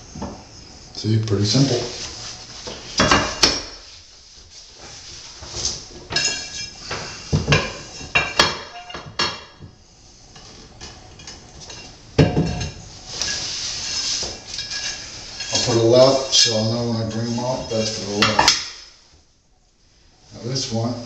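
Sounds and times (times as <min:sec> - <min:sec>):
tiles scraping: 0:10.4 - 0:18.8.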